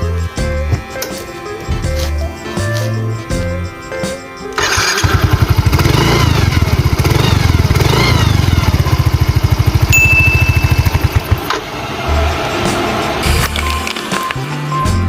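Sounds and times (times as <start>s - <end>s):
motorbike engine running: 4.6s - 13.8s
steady high beep: 9.9s - 11.5s
thin whistling tone: 9.9s - 11.5s.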